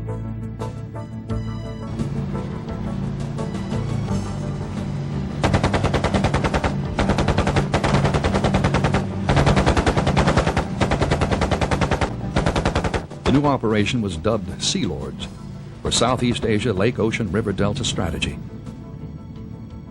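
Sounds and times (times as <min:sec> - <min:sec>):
background music: 0:00.0 - 0:19.9
rapid automatic gunfire: 0:05.4 - 0:13.6.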